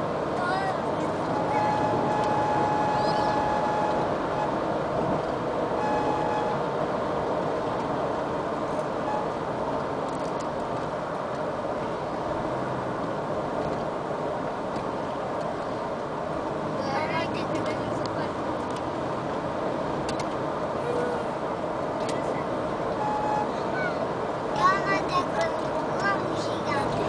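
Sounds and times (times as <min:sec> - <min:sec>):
road and engine noise in car: 0:00.0 - 0:27.0
thin high-pitched tone: 0:01.4 - 0:04.5.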